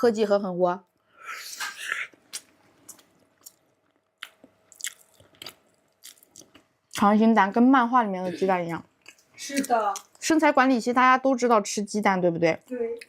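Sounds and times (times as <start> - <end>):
chewing smacks: 1.9 - 7.0.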